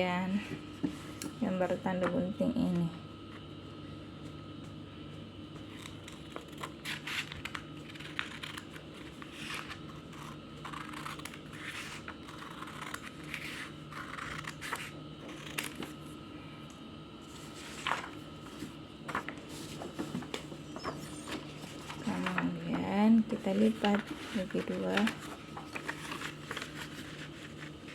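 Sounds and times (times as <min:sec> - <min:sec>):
faint steady hum: 0:00.0 - 0:27.9
scissors snipping paper: 0:05.6 - 0:16.0.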